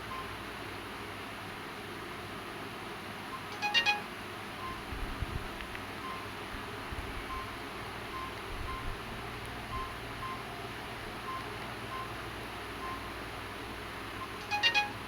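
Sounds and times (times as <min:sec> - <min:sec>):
phone keypad beeps: 0:03.4 - 0:04.9, 0:06.0 - 0:06.3, 0:07.3 - 0:09.0, 0:09.7 - 0:10.5, 0:11.2 - 0:12.2, 0:12.8 - 0:13.1, 0:14.2 - 0:15.0.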